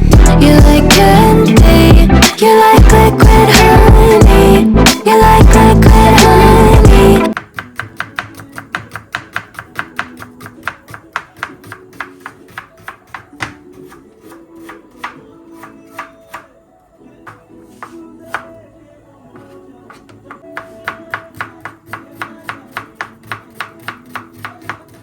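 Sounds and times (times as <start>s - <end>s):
loud background music: 0.0s - 7.4s
knife chopping on cutting board: 7.3s - 16.5s, 17.3s - 18.5s, 19.9s - 25.0s.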